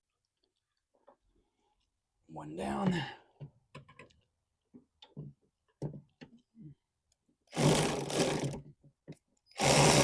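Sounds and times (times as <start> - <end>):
power tool motor running: 7.6 - 8.6, 9.6 - 10.0.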